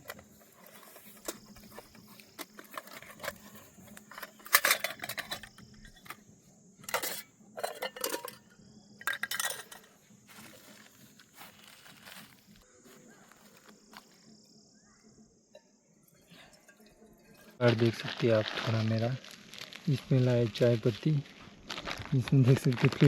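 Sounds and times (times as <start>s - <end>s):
metal pots and utensils clinking: 0.0s - 6.2s, 6.8s - 10.9s, 16.2s - 17.6s.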